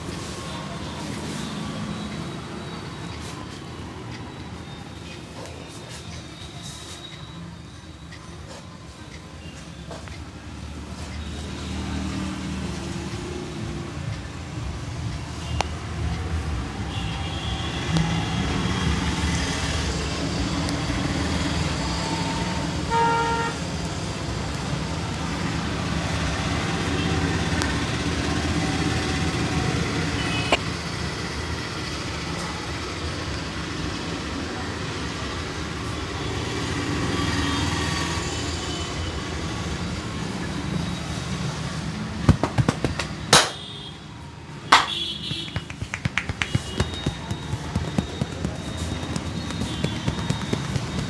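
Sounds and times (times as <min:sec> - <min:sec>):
street traffic: 0:00.0 - 0:51.0
hands slapping in massage: 0:42.3 - 0:43.6, 0:44.7 - 0:51.0.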